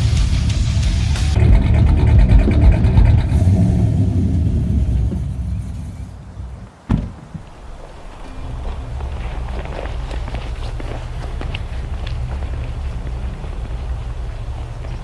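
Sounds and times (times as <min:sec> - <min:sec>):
car engine running: 0:00.0 - 0:06.5, 0:07.5 - 0:15.0
road rumble: 0:00.0 - 0:15.0
sharp thump: 0:06.9 - 0:07.5.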